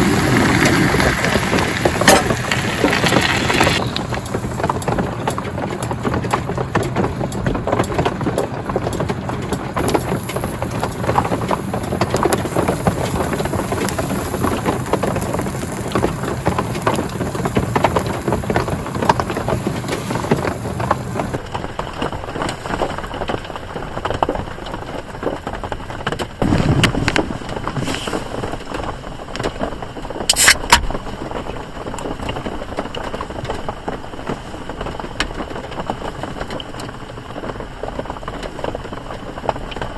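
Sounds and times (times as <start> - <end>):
rain pattering on a tarp: 0.0 - 30.3, 30.9 - 39.9
sharp clicks: 30.3 - 30.9.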